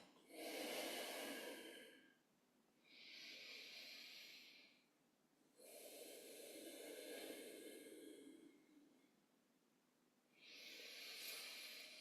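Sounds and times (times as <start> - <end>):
faint breathing through nose: 0.2 - 2.2, 2.8 - 4.9, 5.6 - 9.1, 10.3 - 12.0.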